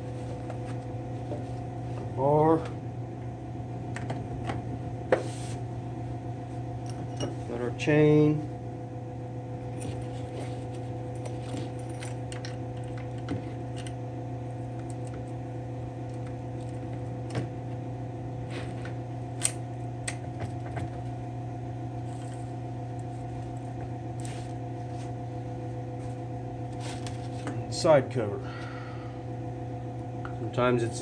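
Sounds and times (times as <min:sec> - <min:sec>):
steady hum: 0:00.0 - 0:31.0.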